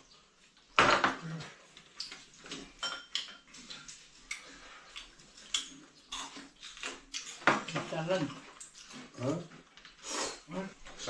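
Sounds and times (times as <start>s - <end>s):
utensils clinking on plates: 0.8s - 9.0s.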